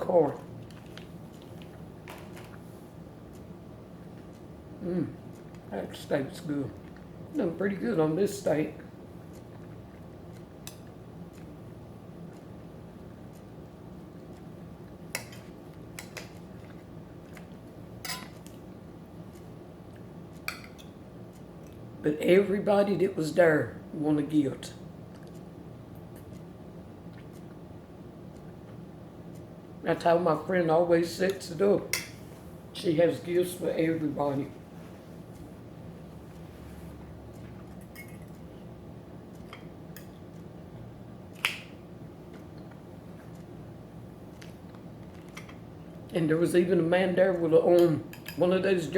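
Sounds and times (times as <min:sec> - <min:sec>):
low room hum: 0:00.0 - 0:48.9
eating sounds with clicks: 0:00.4 - 0:02.6, 0:06.3 - 0:07.4, 0:09.2 - 0:11.6, 0:25.1 - 0:27.6, 0:44.3 - 0:46.1
cutlery clinking on plate: 0:18.0 - 0:18.4.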